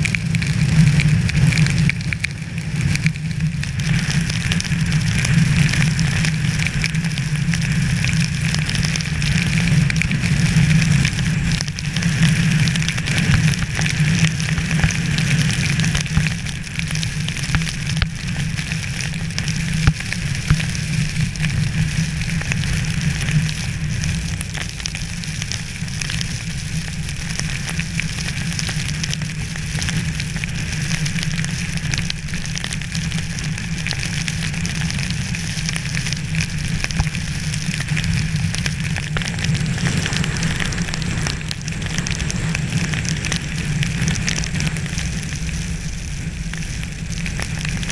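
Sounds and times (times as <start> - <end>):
low rumble: 32.6 - 47.9.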